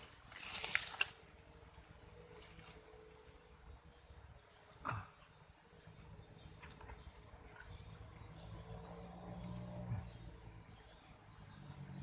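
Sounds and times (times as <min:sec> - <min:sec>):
insect chorus trilling: 0:00.0 - 0:12.0
crack or rustle: 0:00.3 - 0:01.2.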